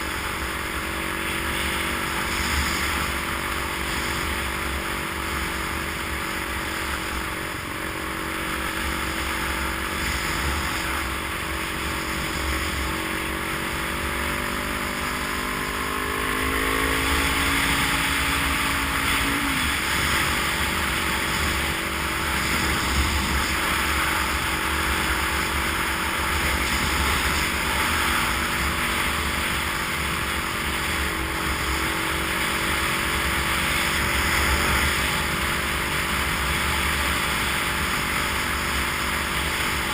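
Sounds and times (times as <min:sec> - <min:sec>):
road and wind noise: 0:00.0 - 0:39.9
vehicle engine rising in pitch: 0:13.4 - 0:23.4.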